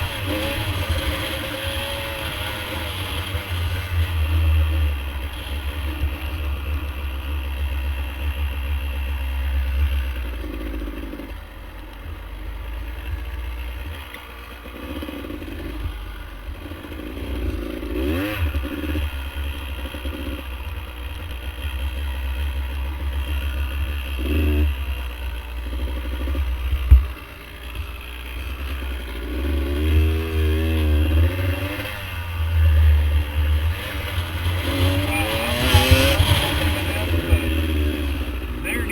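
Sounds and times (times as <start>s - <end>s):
off-road vehicle engine revving: 0.0s - 11.4s, 16.6s - 27.0s, 27.6s - 38.9s.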